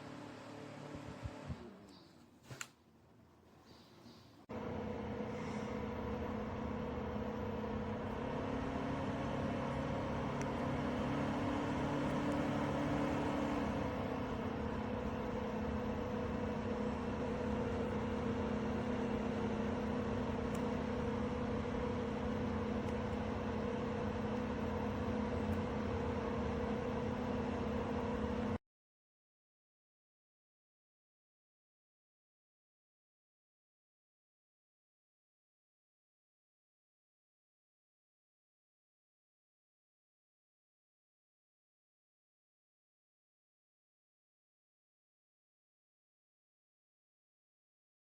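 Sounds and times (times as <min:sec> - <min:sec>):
fan motor humming: 0:04.5 - 0:28.6.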